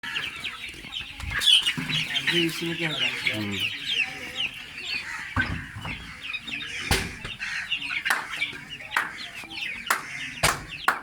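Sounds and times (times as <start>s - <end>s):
chicks peeping: 0.0s - 11.0s
sharp knocks: 6.9s - 7.4s, 10.0s - 11.0s.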